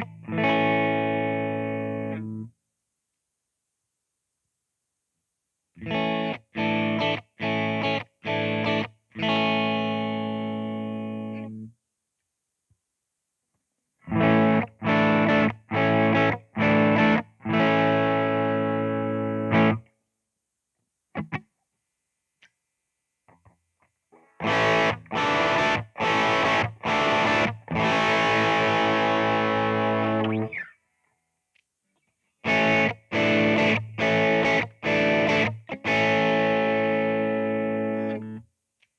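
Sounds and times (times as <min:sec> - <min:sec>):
electric guitar chord stabs: 0:24.3 - 0:30.6.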